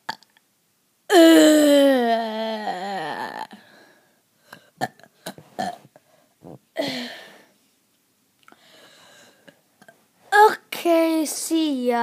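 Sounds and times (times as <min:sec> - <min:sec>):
person burping: 0:00.0 - 0:00.4, 0:04.8 - 0:07.2.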